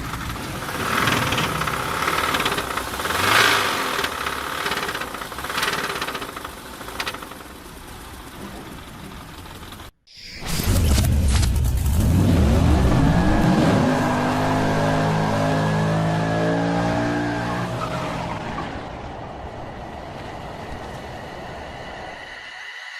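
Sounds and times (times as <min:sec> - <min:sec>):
car engine revving: 0:00.0 - 0:07.2, 0:11.3 - 0:19.1.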